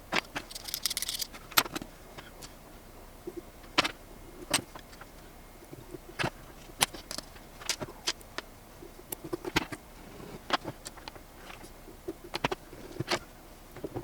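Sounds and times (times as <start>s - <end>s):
small metal clicks and clinks: 0.3s - 1.8s.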